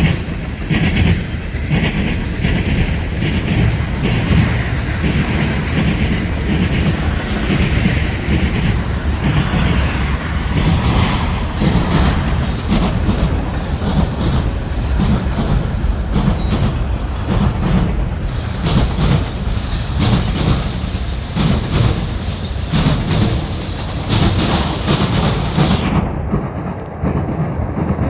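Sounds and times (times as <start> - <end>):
freight train rolling past: 0.0 - 28.0
high wheel squeal: 3.0 - 10.6, 22.2 - 24.0.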